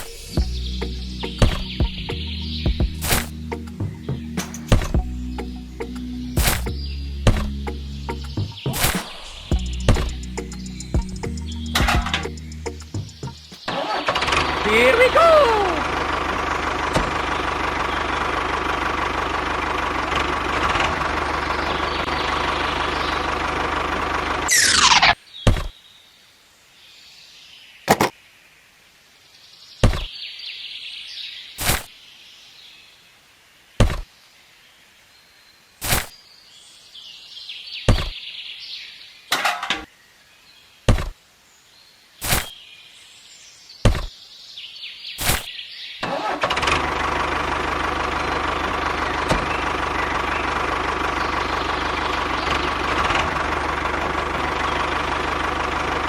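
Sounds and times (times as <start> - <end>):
small engine idling: 9.5 - 24.6, 46.0 - 56.0
sharp knocks: 27.9 - 28.1, 29.8 - 30.1, 33.8 - 34.1, 37.9 - 38.2, 40.9 - 41.2, 43.9 - 44.1.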